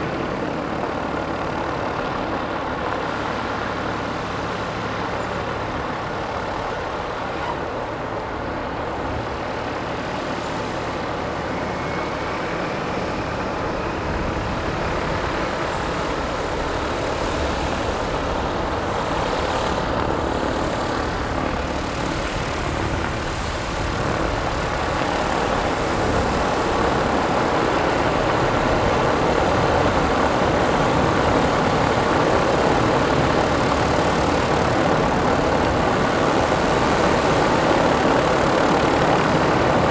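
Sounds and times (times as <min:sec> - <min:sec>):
light aircraft propeller engine: 0:00.0 - 0:39.9.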